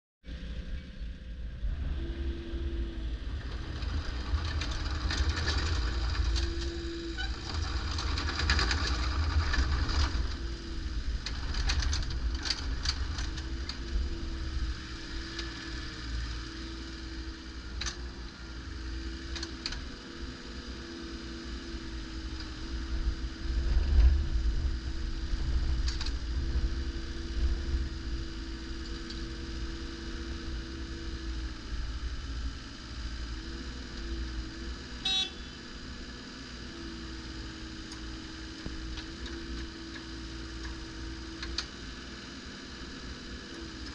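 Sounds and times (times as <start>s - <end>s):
diesel engine rumbling: 0.2s - 43.9s
steady whine: 0.2s - 43.9s
high-pitched tone: 35.0s - 35.6s.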